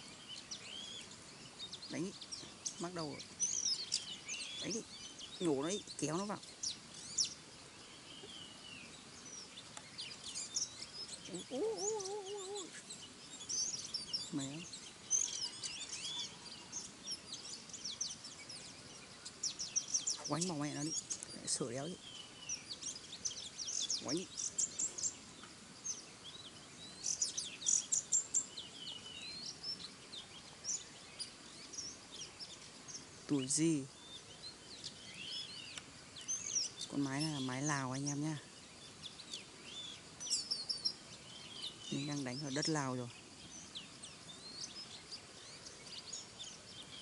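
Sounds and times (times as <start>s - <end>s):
faint forest hiss: 0.0s - 47.0s
small birds chirping: 0.0s - 47.0s
wavering low bird call: 10.4s - 12.9s.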